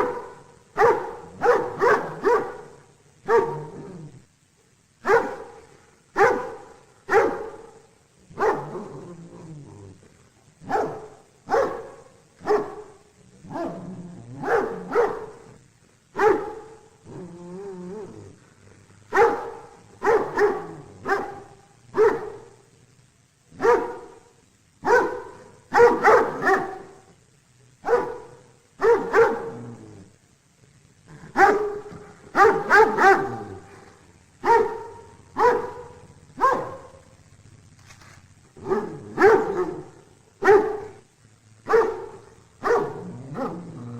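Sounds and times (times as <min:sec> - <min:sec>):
dog barking: 0:00.0 - 0:03.9, 0:05.0 - 0:08.9, 0:10.6 - 0:15.6, 0:16.2 - 0:16.9, 0:19.1 - 0:22.6, 0:23.5 - 0:27.0, 0:27.8 - 0:29.7, 0:31.3 - 0:33.6, 0:34.4 - 0:37.1, 0:38.6 - 0:41.0, 0:41.6 - 0:43.7
dog whining or growling: 0:03.4 - 0:04.3, 0:08.6 - 0:10.1, 0:17.0 - 0:18.4, 0:29.4 - 0:30.2, 0:42.8 - 0:43.9.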